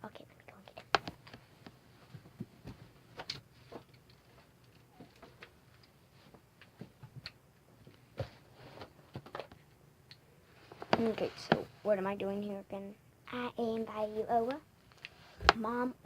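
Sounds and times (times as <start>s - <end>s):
low room hum: 0.0s - 16.0s
faint clicks and taps: 0.6s - 11.7s, 14.4s - 15.7s.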